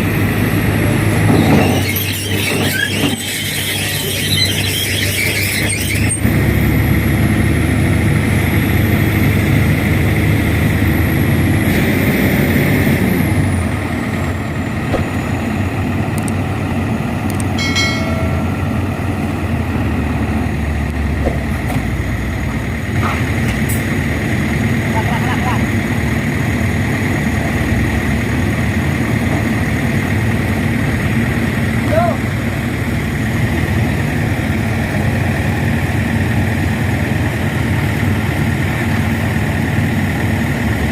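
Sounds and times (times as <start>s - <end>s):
brief squeal: 1.2s - 6.3s.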